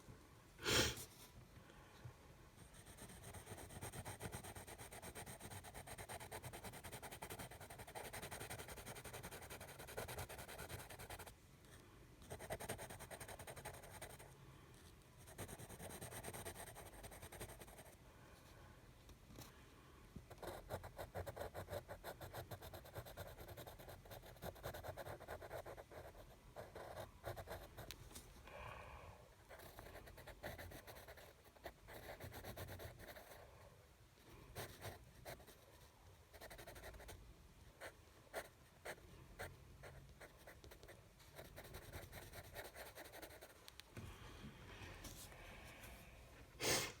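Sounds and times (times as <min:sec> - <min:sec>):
drawing tool scratching on paper: 0:02.8 - 0:11.3.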